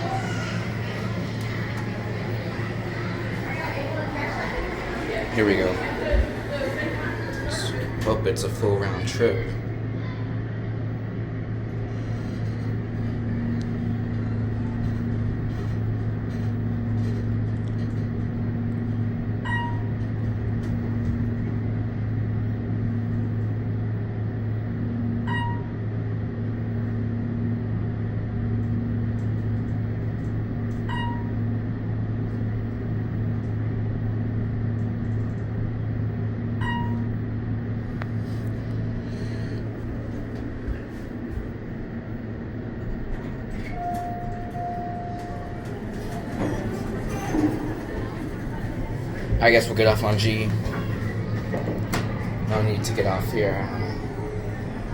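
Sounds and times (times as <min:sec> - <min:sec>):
elevator hum: 0:00.0 - 0:54.9
elevator ringing chime: 0:19.4 - 0:20.2, 0:25.2 - 0:25.8, 0:30.8 - 0:31.6, 0:36.6 - 0:37.2, 0:43.5 - 0:54.9.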